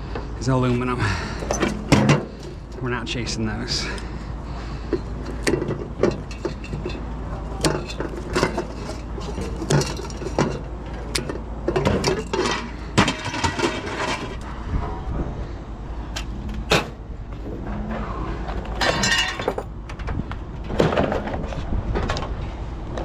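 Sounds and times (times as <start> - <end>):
scrap metal clanking: 3.7 - 21.7.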